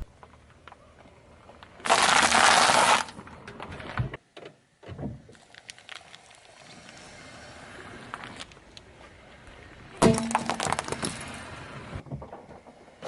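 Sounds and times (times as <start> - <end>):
faint scattered crackles: 5.4 - 11.4
object crushed under car tyre: 10.0 - 11.3.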